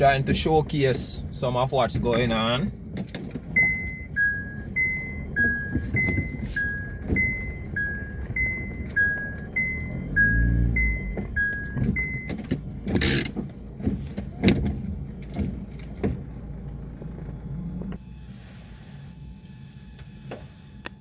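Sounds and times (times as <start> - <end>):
knocks and thumps: 11.2 - 16.2.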